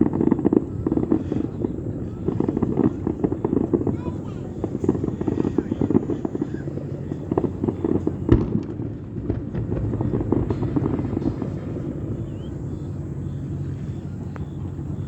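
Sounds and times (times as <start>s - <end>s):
fireworks crackling: 0.0s - 15.0s
heavy firework bang: 0.0s - 15.0s.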